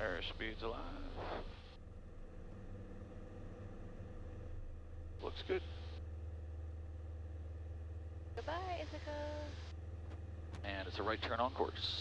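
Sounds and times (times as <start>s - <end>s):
aircraft engine at full power: 10.5s - 12.0s.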